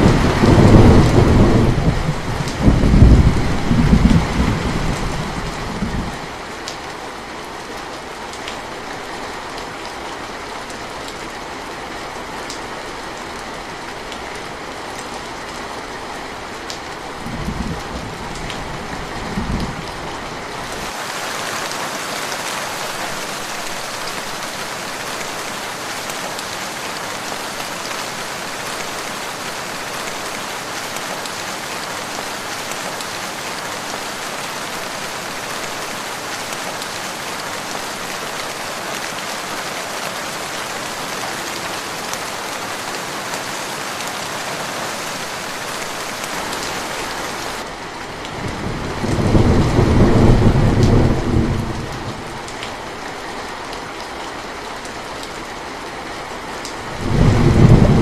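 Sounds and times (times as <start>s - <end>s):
low rumble of thunder: 0.0s - 6.2s, 17.2s - 20.0s, 48.5s - 52.4s, 56.9s - 58.0s
steady rain: 0.0s - 58.0s.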